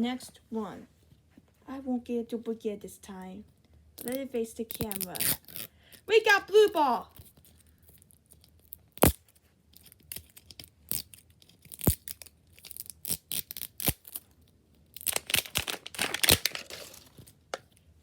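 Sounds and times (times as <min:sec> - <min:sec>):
plastic wrapping being torn: 0:04.0 - 0:05.7, 0:08.0 - 0:14.2, 0:14.8 - 0:17.4.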